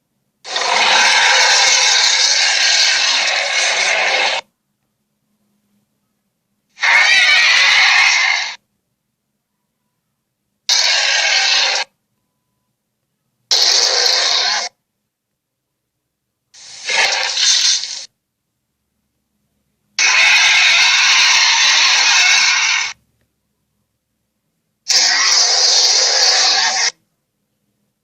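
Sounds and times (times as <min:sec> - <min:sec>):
harsh creature calls: 0:00.5 - 0:04.5, 0:06.8 - 0:08.6, 0:10.7 - 0:12.0, 0:13.5 - 0:14.8, 0:16.6 - 0:18.1, 0:20.0 - 0:23.0, 0:24.9 - 0:27.0.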